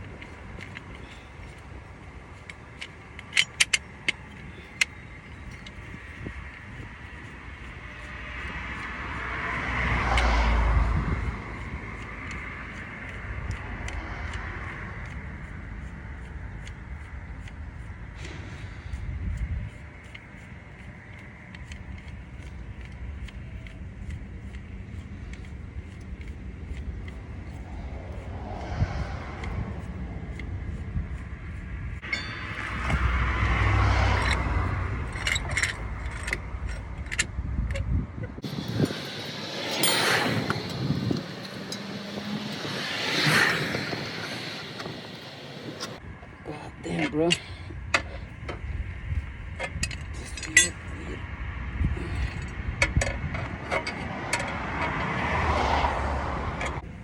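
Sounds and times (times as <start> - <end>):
steady low rumble: 0.0 - 55.2
background traffic: 0.0 - 57.0
car passing close by: 8.4 - 14.9, 27.6 - 30.4, 32.0 - 36.0, 38.4 - 46.0, 53.5 - 56.8
light metallic clinks: 32.0 - 37.8, 38.4 - 46.0.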